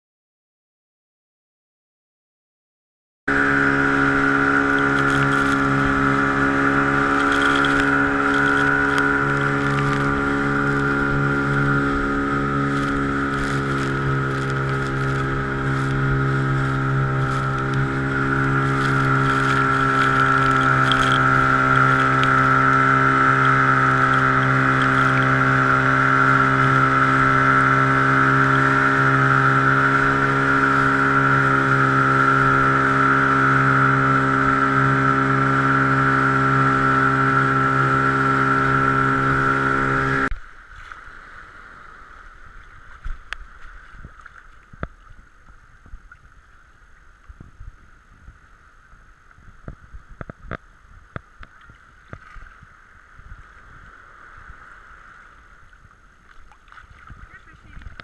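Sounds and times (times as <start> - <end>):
motorboat engine running: 3.3 - 58.0.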